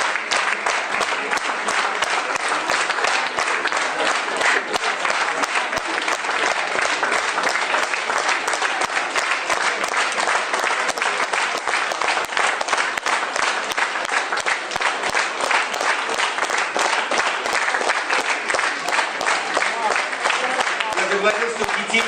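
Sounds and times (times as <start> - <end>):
audience applauding: 0.0 - 22.0.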